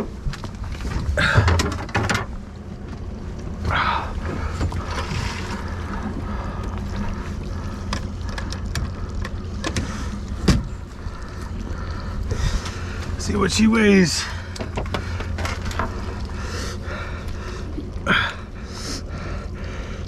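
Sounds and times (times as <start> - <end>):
boat engine idling: 0.0 - 20.0
knocks and clatter on deck: 1.0 - 2.3.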